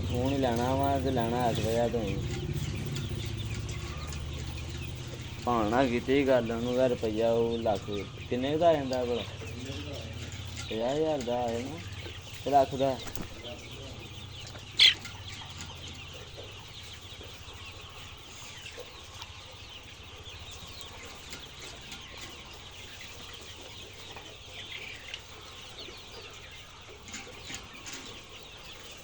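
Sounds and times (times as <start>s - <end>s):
chickens clucking and chirping: 0.0s - 29.0s.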